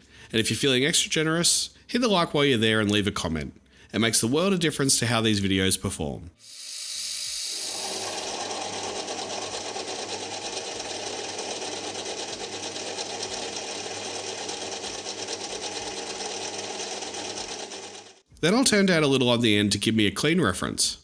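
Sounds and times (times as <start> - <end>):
metal lathe cutting steel: 6.4 - 18.2.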